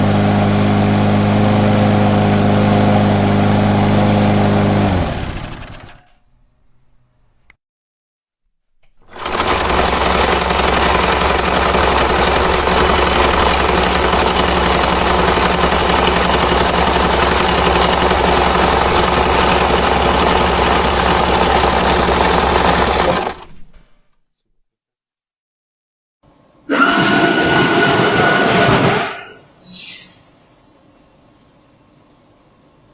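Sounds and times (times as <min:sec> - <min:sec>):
small engine running fast: 0:00.0 - 0:06.0, 0:09.1 - 0:23.4, 0:26.7 - 0:29.4.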